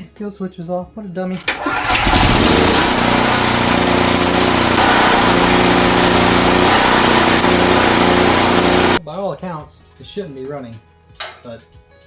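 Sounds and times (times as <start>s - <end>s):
generator engine running: 1.5s - 9.0s.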